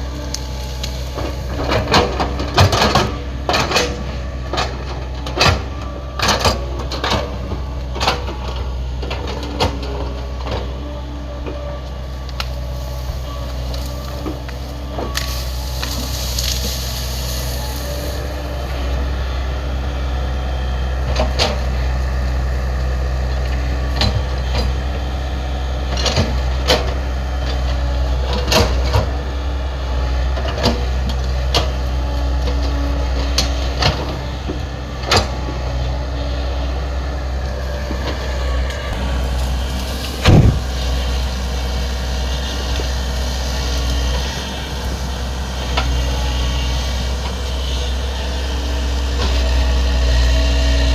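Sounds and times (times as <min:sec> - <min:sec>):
excavator engine running: 0:00.0 - 0:50.9
brush cracking and knocking: 0:12.3 - 0:18.3
loud thump: 0:40.2 - 0:40.7.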